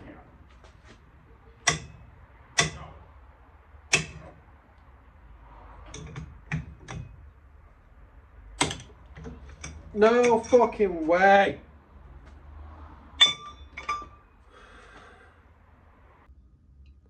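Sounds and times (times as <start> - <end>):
hammer tapping metal: 1.6 - 3.0, 3.9 - 4.4, 5.9 - 7.2, 8.6 - 10.7, 13.2 - 14.2.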